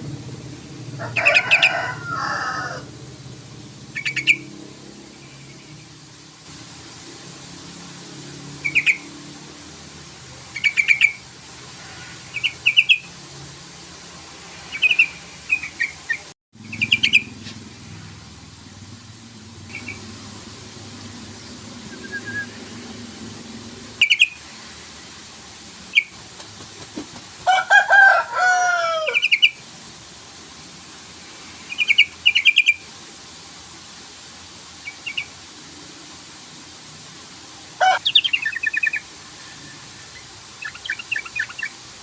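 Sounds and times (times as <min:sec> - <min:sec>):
bulbul bubbly calls: 0:03.8 - 0:05.7, 0:08.6 - 0:09.1, 0:10.5 - 0:11.2, 0:12.3 - 0:13.1, 0:14.7 - 0:17.4, 0:19.7 - 0:20.2, 0:21.8 - 0:22.8, 0:23.9 - 0:24.4, 0:31.7 - 0:32.9, 0:37.9 - 0:39.1, 0:40.1 - 0:41.8.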